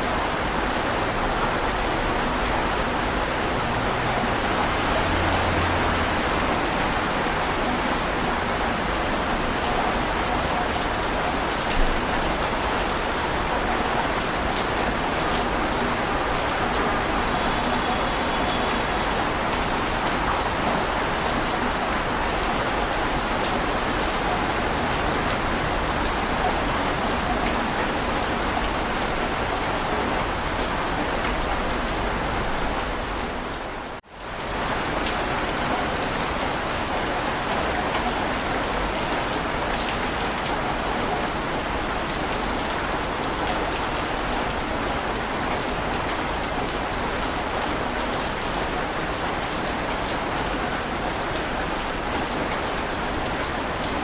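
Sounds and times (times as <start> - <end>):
heavy rain hissing: 11.8 - 21.3.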